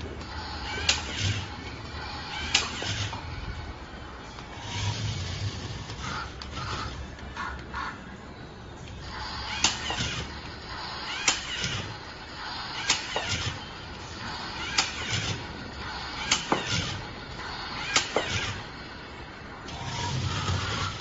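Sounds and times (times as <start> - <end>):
low motor whir: 0.0 - 7.9, 8.7 - 21.0
toy shooting mechanism snap: 0.2 - 3.3, 9.0 - 13.6, 14.4 - 18.8.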